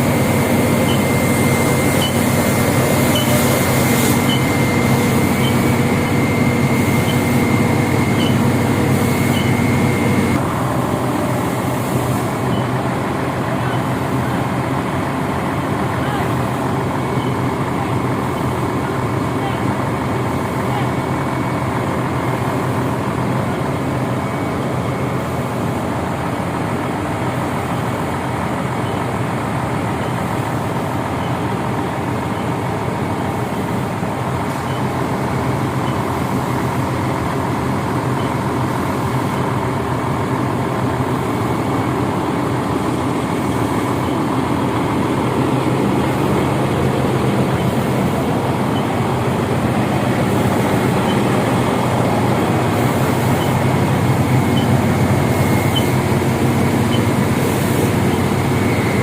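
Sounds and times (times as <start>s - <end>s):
heavy diesel truck engine running: 0.0s - 59.0s.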